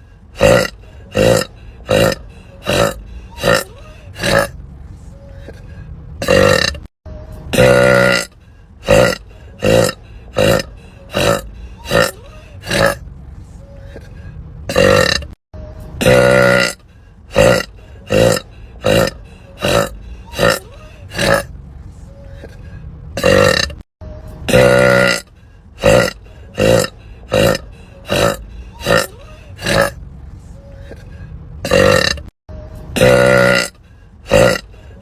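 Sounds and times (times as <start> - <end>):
woman burping: 0.4 - 4.5, 6.2 - 6.9, 7.5 - 8.3, 8.9 - 13.0, 14.7 - 15.4, 16.0 - 16.8, 17.4 - 21.5, 23.2 - 23.8, 25.8 - 30.0, 31.6 - 32.3, 33.0 - 33.7, 34.3 - 34.7.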